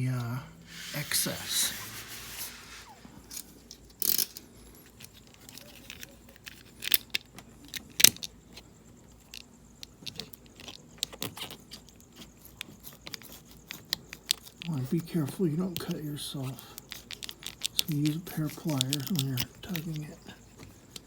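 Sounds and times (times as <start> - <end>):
light scrapes from hand tools: 0.2 - 3.5.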